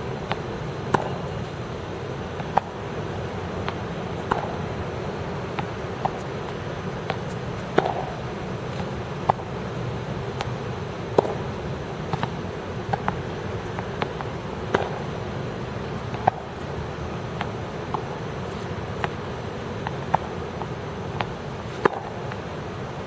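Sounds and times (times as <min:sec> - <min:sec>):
background hum: 0:00.0 - 0:23.0
balls bouncing on court: 0:00.2 - 0:01.3, 0:02.4 - 0:02.9, 0:03.6 - 0:04.8, 0:05.4 - 0:09.7, 0:10.3 - 0:16.6, 0:17.3 - 0:22.5
tennis balls struck with rackets: 0:00.2 - 0:01.5, 0:02.3 - 0:02.9, 0:03.5 - 0:04.8, 0:05.4 - 0:16.6, 0:17.3 - 0:22.5.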